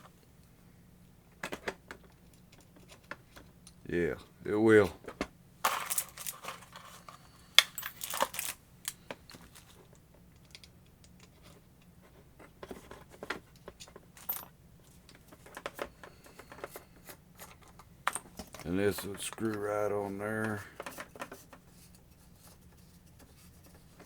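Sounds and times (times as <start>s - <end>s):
tool parts clicking and tapping: 5.2s - 9.6s.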